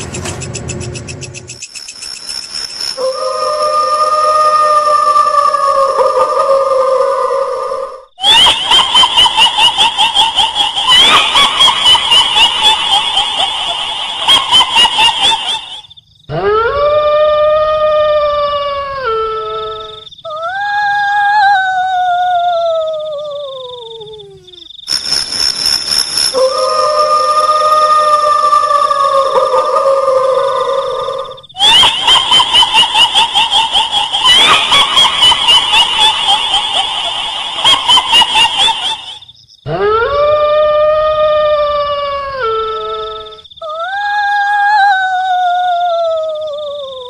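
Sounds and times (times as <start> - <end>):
wavering howl sliding down: 3.0 - 8.1, 26.4 - 39.2
ghostly howls: 3.0 - 24.6, 26.3 - 47.0
shrill pulsing cackle: 3.0 - 24.8, 26.2 - 47.0.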